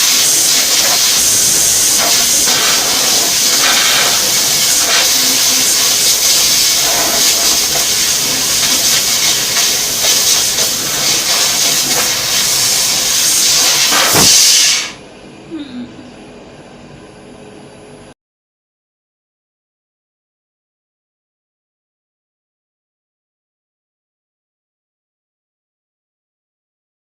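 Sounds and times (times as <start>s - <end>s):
laser cutter gas hiss: 0.0s - 15.0s.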